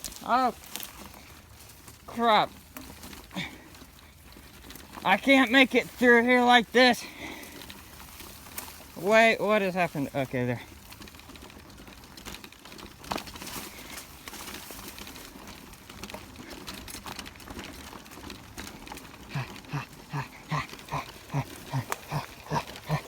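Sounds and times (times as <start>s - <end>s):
rustling and crackling: 0.0s - 23.0s
heavy breathing: 3.3s - 3.8s, 7.0s - 8.0s, 19.2s - 23.0s.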